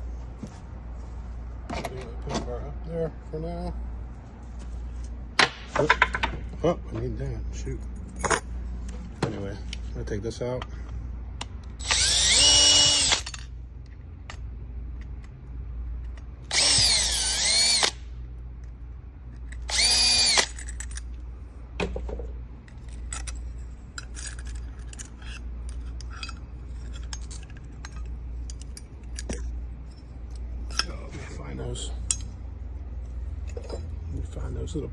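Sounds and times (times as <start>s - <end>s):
small metal parts clicking: 11.6s - 13.5s, 19.3s - 21.2s, 22.6s - 30.9s
power drill motor whine: 11.8s - 13.5s, 16.5s - 18.0s, 19.6s - 20.6s.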